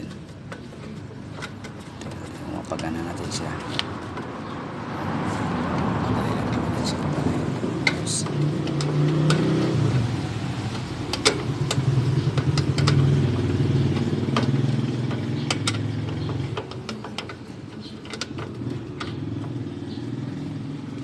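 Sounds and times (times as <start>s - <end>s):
motorcycle engine running: 5.5s - 21.0s.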